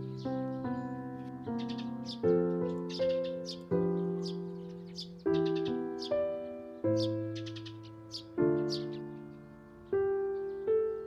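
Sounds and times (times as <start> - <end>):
slow piano chords: 0.0 - 11.0
small birds chirping: 0.0 - 11.0.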